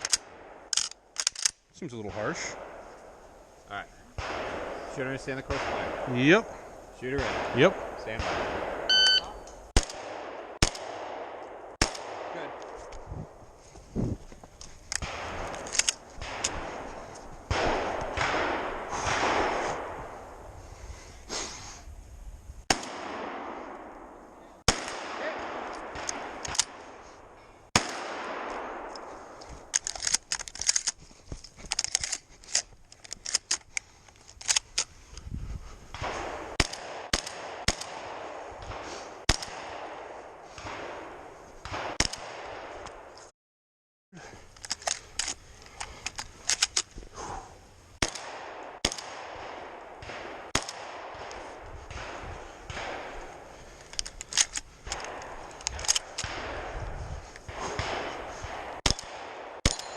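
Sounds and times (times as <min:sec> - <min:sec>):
gun handling noise: 0:00.0 - 0:01.6, 0:11.4 - 0:18.3, 0:25.6 - 0:27.6, 0:28.4 - 0:37.9, 0:44.2 - 0:47.1, 0:48.0 - 0:59.9
shotgun shots: 0:00.0 - 0:03.2, 0:04.2 - 0:13.3, 0:14.9 - 0:20.2, 0:22.7 - 0:27.1, 0:27.7 - 0:30.2, 0:35.9 - 0:43.1, 0:48.0 - 0:59.9.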